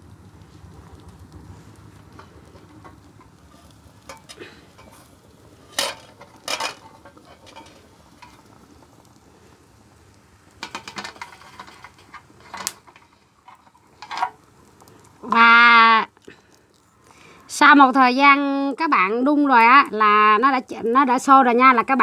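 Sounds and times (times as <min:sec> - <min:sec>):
faint steady background noise: 0:00.0 - 0:22.0
pot and utensil clattering: 0:02.1 - 0:08.7, 0:10.6 - 0:14.4.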